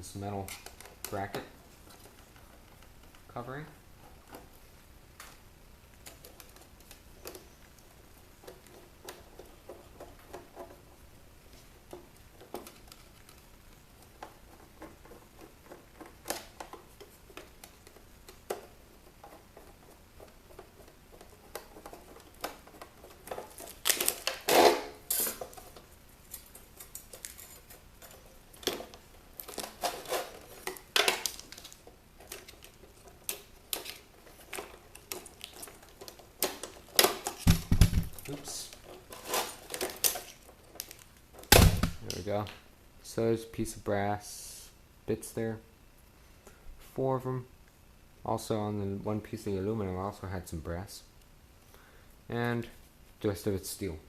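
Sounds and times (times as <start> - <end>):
metal parts and tools clinking: 22.7 - 32.6.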